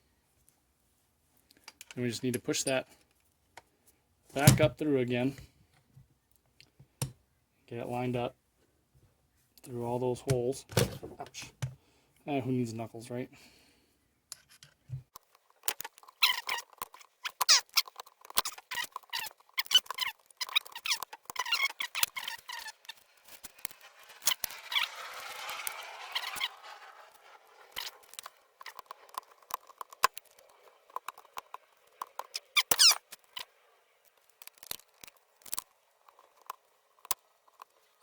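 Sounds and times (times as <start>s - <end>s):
metal hinge parts clicking and scraping: 15.2s - 33.5s
hinge squeaking: 15.7s - 33.5s.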